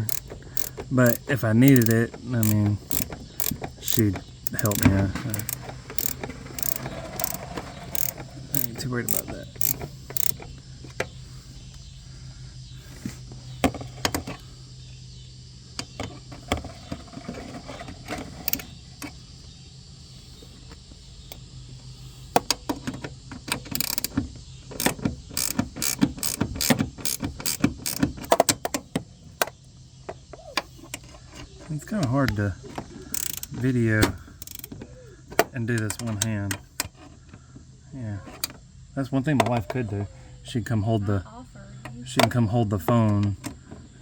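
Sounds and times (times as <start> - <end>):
hand ratchet clicking: 0.0 - 11.0, 23.5 - 24.2, 24.8 - 28.4, 33.1 - 33.6, 34.4 - 34.7.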